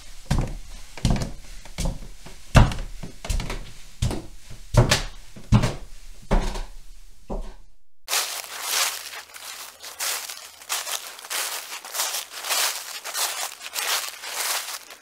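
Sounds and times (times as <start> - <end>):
footsteps climbing stairs: 0.0 - 7.7
footsteps crunching dry leaves: 8.1 - 15.0.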